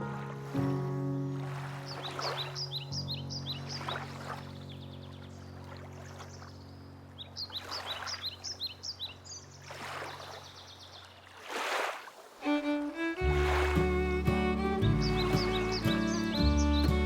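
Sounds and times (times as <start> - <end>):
water lapping: 0.0 - 17.0
small bird chirping: 1.9 - 4.0, 7.2 - 9.6, 14.9 - 17.0
sustained string chord: 12.5 - 17.0
music with picked notes and bass: 13.2 - 17.0.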